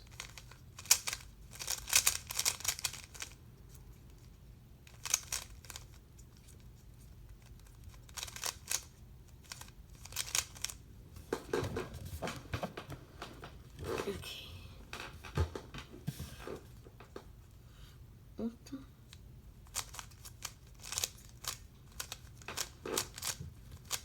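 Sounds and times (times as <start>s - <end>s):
plastic puzzle cube clicking turns: 0.1s - 3.4s, 4.8s - 6.0s, 7.4s - 10.8s, 19.7s - 24.0s.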